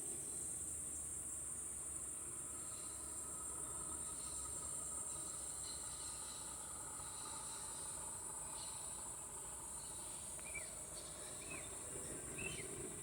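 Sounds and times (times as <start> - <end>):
insect chorus droning: 0.0 - 13.0.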